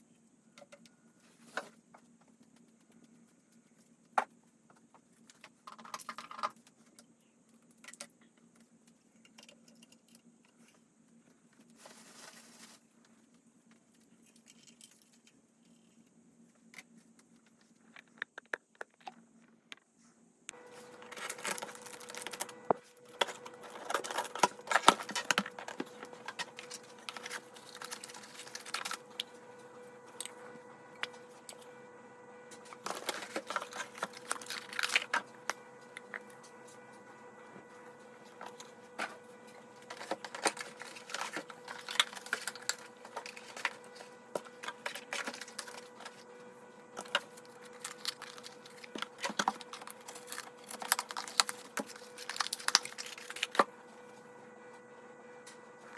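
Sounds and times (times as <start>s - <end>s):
faint steady hum: 0.0s - 55.9s
packaging rustling: 20.6s - 30.4s, 32.7s - 36.3s, 38.4s - 46.3s, 46.9s - 53.7s.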